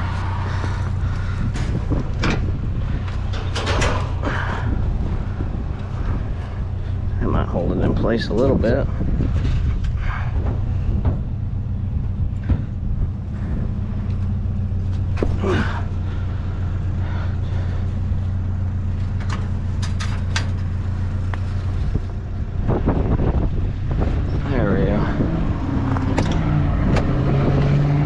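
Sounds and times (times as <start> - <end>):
pickup truck engine idling: 0.0 - 7.3, 8.9 - 24.6.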